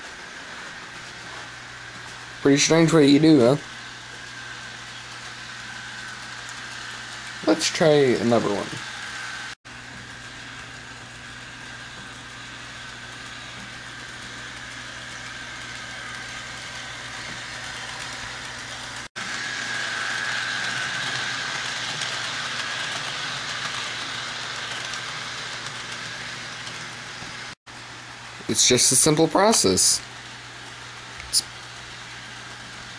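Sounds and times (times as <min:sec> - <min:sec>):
model train wheel noise: 0:00.0 - 0:32.9
model train motor hum: 0:01.9 - 0:27.6.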